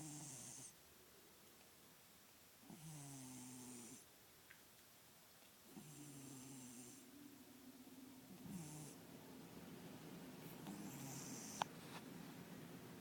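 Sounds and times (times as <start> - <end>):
cat snoring: 0.0 - 0.8, 2.6 - 4.1, 5.7 - 7.1, 8.3 - 9.0, 10.6 - 11.7.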